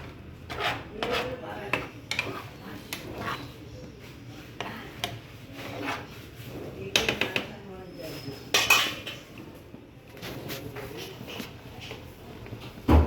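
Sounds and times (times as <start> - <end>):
spoon scraping a cooking pan: 0.0 - 9.4.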